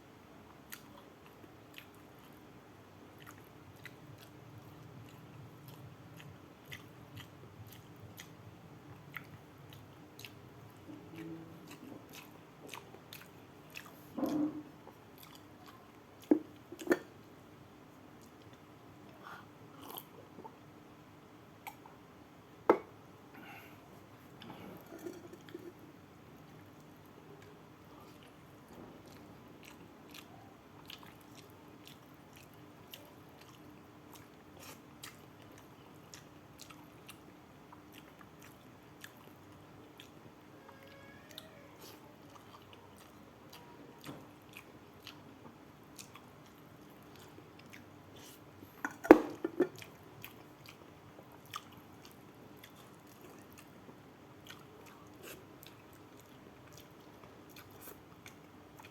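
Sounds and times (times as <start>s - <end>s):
faint steady hum: 0.0s - 58.9s
wet chewing and mouth clicks: 0.7s - 2.4s, 3.1s - 17.1s, 29.0s - 40.2s, 41.8s - 58.9s.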